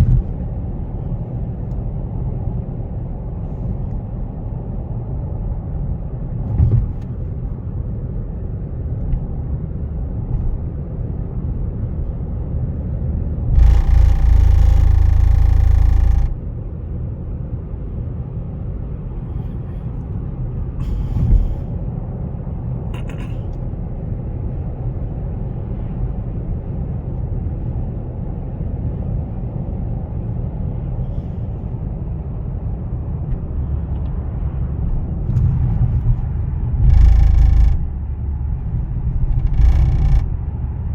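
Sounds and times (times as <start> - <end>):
car engine rumble: 0.0 - 40.9
harsh buzzing bursts: 13.6 - 16.4, 36.8 - 37.9, 39.4 - 40.4.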